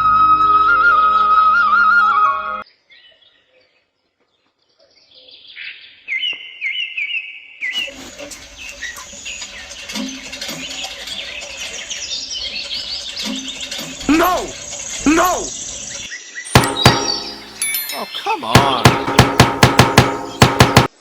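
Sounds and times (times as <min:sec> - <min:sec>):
birds chirping: 0:05.2 - 0:21.0.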